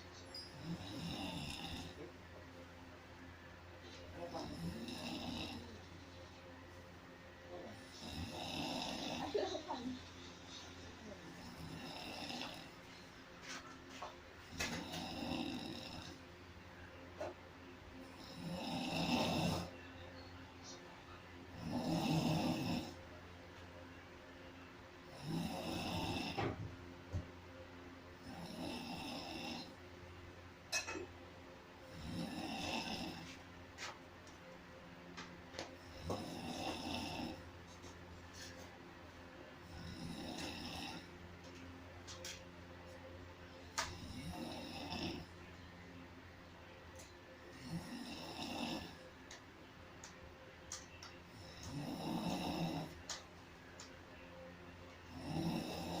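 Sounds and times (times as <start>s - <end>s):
person snoring: 0.5s - 2.1s, 4.1s - 5.9s, 7.6s - 10.0s, 11.3s - 12.8s, 14.5s - 16.2s, 18.0s - 19.8s, 21.5s - 23.0s, 25.1s - 26.6s, 28.2s - 29.8s, 31.9s - 33.4s, 35.8s - 37.4s, 39.6s - 41.1s, 43.8s - 45.3s, 47.5s - 49.0s, 51.3s - 53.1s, 55.1s - 56.0s.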